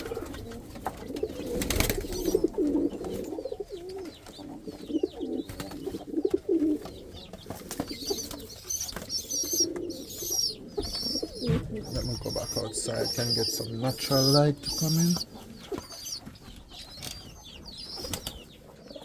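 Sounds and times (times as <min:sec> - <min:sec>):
pigeons cooing: 0:00.0 - 0:19.0
higher chirping: 0:08.0 - 0:18.3.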